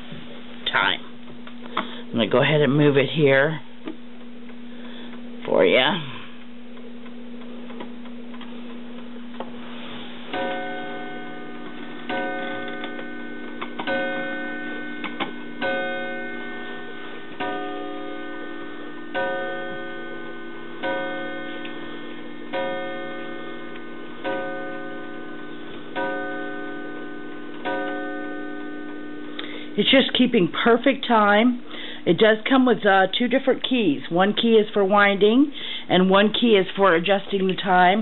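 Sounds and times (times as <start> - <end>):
mantel clock striking: 10.3 - 29.4.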